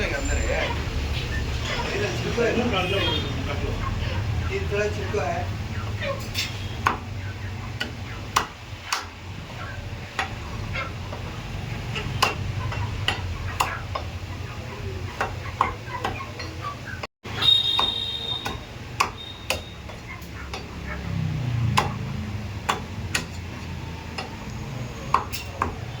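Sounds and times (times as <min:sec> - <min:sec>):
knife chopping through meat: 0:17.5 - 0:20.7.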